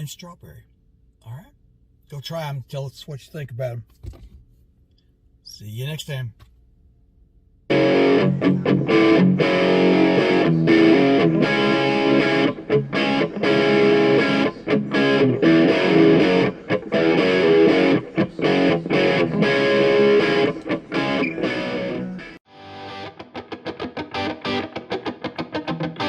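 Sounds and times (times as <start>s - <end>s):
distorted electric guitar riff: 7.7s - 26.0s.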